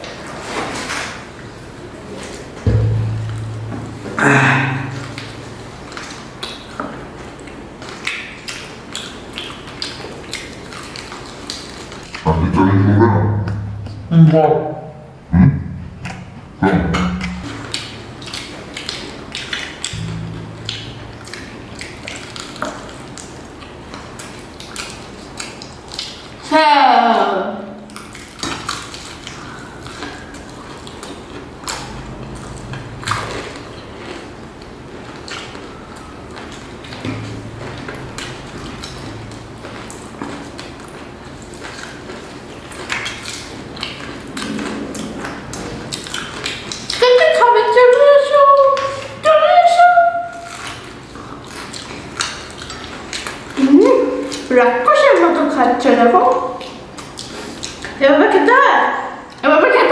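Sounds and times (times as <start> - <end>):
people chewing fried chicken: 50.6 - 54.5.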